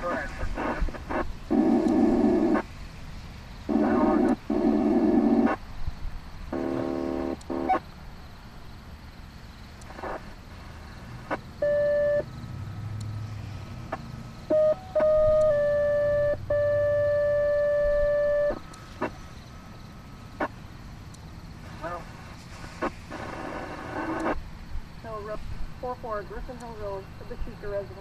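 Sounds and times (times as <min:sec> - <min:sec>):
radio squelch clicks: 0:00.0 - 0:02.7, 0:03.7 - 0:05.6, 0:06.5 - 0:07.8, 0:09.8 - 0:11.4, 0:18.0 - 0:19.5, 0:20.4 - 0:24.4
buzzy radio tone burst: 0:03.6 - 0:05.6, 0:06.5 - 0:07.8, 0:21.7 - 0:24.4
electronic dispatch alert tones: 0:03.7 - 0:05.6, 0:06.5 - 0:07.8, 0:11.6 - 0:12.3, 0:14.5 - 0:19.2
short beep: 0:14.5 - 0:18.6.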